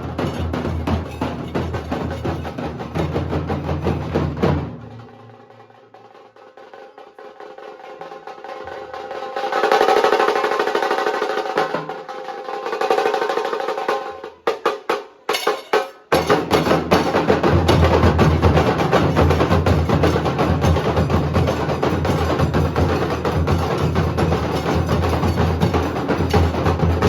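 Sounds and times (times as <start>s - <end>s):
deep drum beats: 0.0s - 5.1s, 16.1s - 27.0s.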